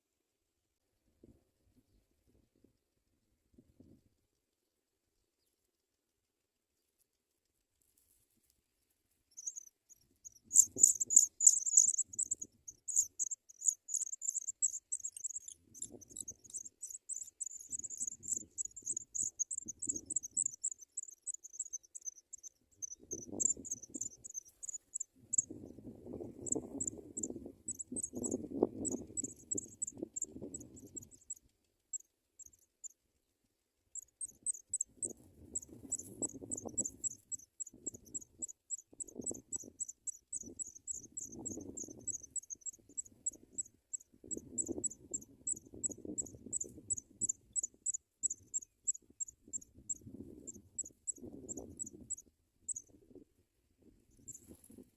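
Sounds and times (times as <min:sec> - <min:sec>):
rapid high-pitched chirping: 0:09.3 - 0:33.0, 0:34.0 - 0:53.0.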